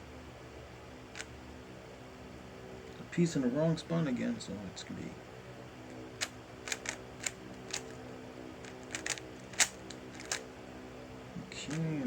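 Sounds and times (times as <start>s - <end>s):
faint steady hum: 0.0s - 12.0s
puzzle cube plastic clicks: 6.2s - 8.0s, 8.6s - 10.4s.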